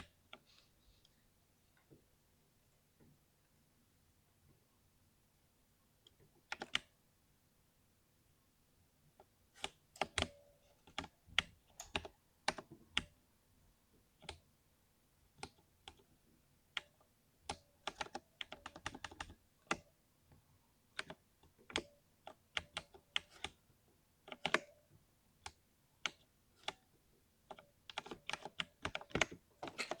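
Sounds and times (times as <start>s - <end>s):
mechanical keyboard typing: 6.5s - 6.9s, 9.6s - 13.1s, 17.5s - 19.9s, 21.0s - 23.6s, 24.3s - 24.8s, 27.5s - 30.0s.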